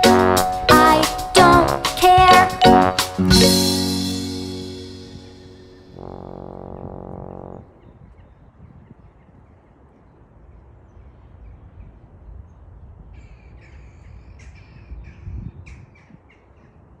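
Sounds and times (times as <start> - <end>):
low outdoor rumble: 5.4 - 7.8.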